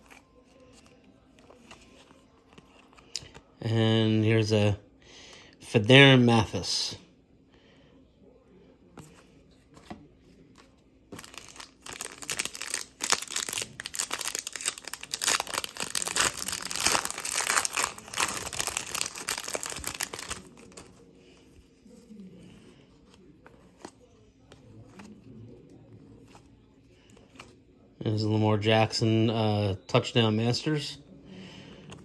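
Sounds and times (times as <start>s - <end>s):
faint handling noises: 0.0s - 3.6s, 7.5s - 27.9s, 31.0s - 32.0s
wrapper tearing and crinkling: 11.2s - 20.8s.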